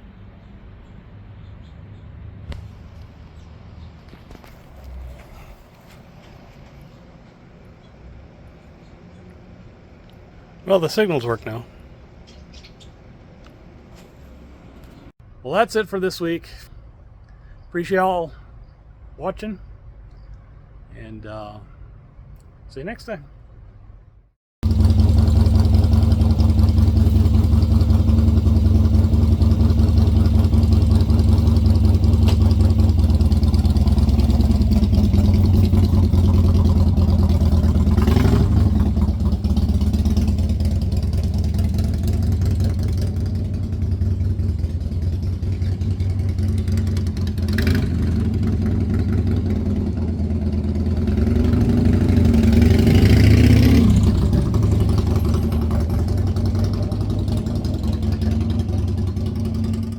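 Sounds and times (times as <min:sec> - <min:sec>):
motorcycle engine idling and revving: 0:24.6 - 0:59.9.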